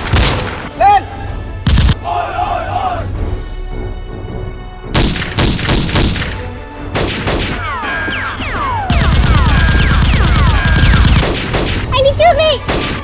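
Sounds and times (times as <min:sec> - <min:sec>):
gunshots: 0:00.0 - 0:00.8, 0:01.7 - 0:02.0, 0:05.0 - 0:11.9, 0:12.6 - 0:13.0
background music: 0:00.0 - 0:13.0
automatic gunfire burst: 0:08.9 - 0:11.8.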